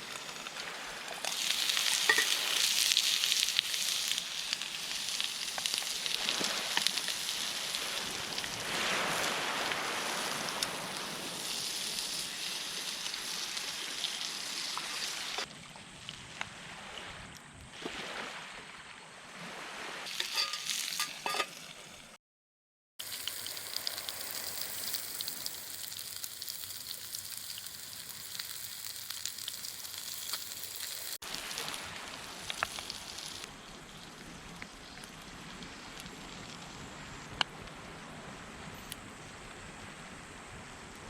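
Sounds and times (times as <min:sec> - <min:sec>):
meat sizzling in a frying pan: 0:00.0 - 0:15.4, 0:20.1 - 0:21.5, 0:23.0 - 0:33.5.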